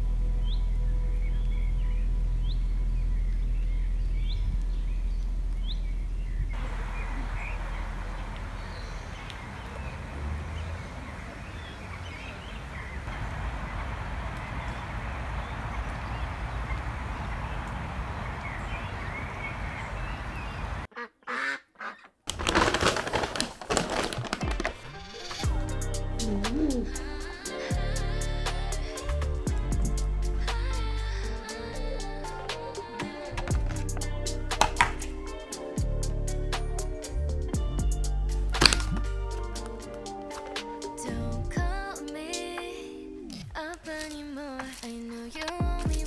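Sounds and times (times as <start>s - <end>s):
steady outdoor noise: 0.0s - 20.9s, 25.4s - 42.7s
bird chirps: 0.4s - 20.9s
ducks or geese calling: 6.6s - 22.0s.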